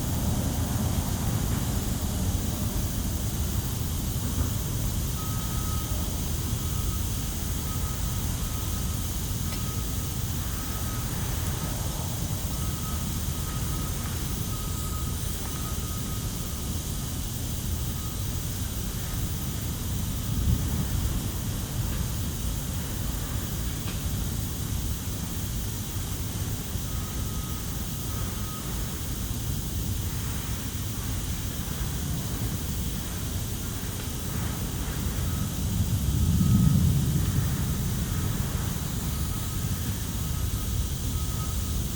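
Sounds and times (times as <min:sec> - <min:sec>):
factory noise: 0:00.0 - 0:41.9
distant aircraft rumble: 0:33.0 - 0:41.8.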